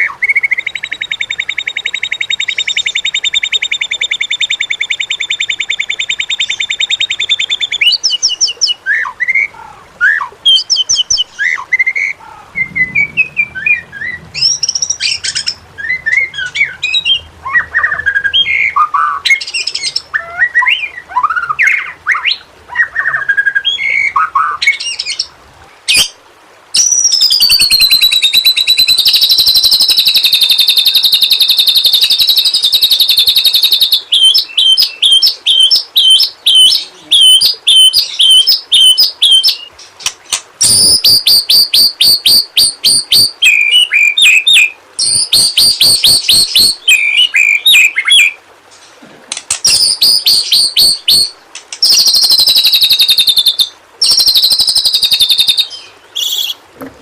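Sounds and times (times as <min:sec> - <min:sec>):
bird singing whistled phrases: 0:00.0 - 0:25.2, 0:26.8 - 0:39.7, 0:40.6 - 0:48.4, 0:49.6 - 0:56.6
buzzy bird trill: 0:49.6 - 0:56.6.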